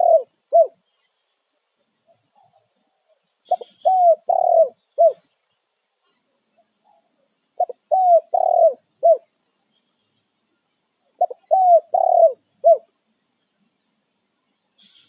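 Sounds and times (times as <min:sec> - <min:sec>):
dove cooing: 0:00.0 - 0:00.8, 0:03.5 - 0:05.2, 0:07.6 - 0:09.2, 0:11.2 - 0:12.9.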